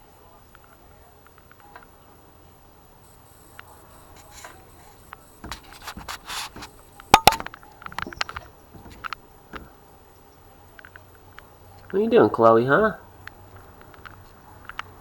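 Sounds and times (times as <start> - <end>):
rubbing and scraping: 4.2 - 9.7.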